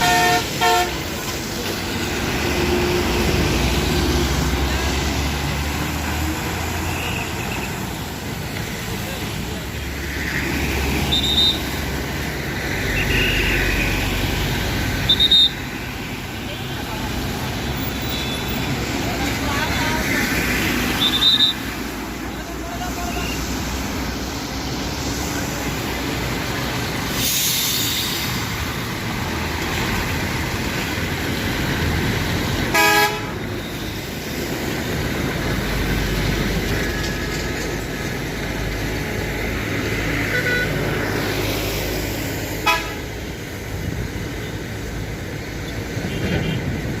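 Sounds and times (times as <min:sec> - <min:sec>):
vehicle horn blast: 0:00.0 - 0:01.0, 0:32.7 - 0:33.4, 0:42.6 - 0:43.0
traffic noise: 0:00.0 - 0:47.0.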